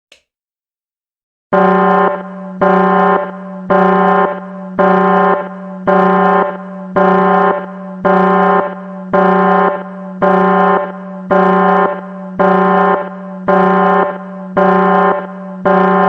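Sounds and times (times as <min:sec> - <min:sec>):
pulsing alarm buzzer: 0:01.5 - 0:16.0.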